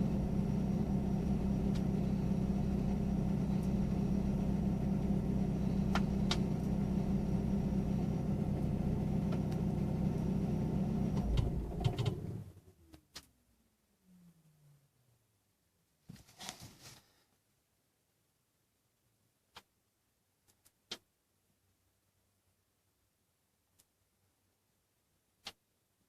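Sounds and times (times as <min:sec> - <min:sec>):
car engine idling and sputtering: 0:00.0 - 0:12.6.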